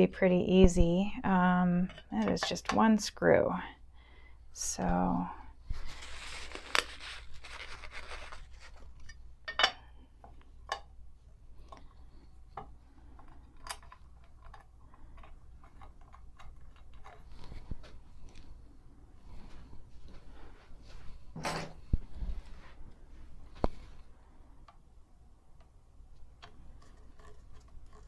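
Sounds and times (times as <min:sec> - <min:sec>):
brief rustle: 0:05.7 - 0:09.1.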